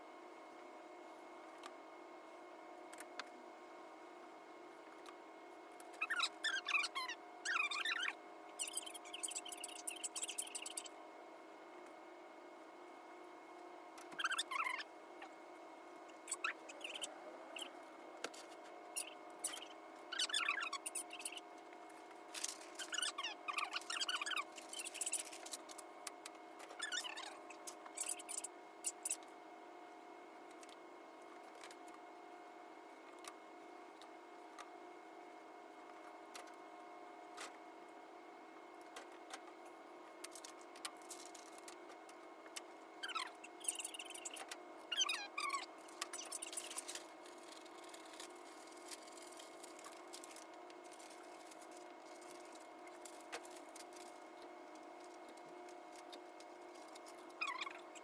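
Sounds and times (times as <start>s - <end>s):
faint hum: 0.0s - 58.0s
high squeaky sped-up voices: 6.0s - 10.9s, 14.1s - 15.3s, 16.1s - 17.8s, 19.0s - 21.4s, 22.7s - 25.6s, 26.6s - 29.2s, 43.0s - 48.3s, 57.4s - 58.0s.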